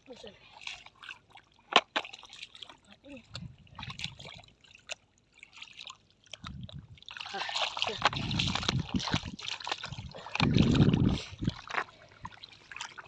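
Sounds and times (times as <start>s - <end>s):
shallow water splashing: 0.0s - 13.0s.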